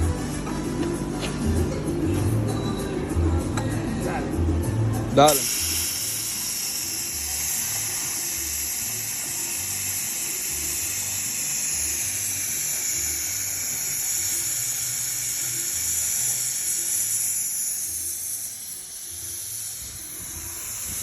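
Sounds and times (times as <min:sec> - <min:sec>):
plasma cutter hissing: 0:05.2 - 0:21.0.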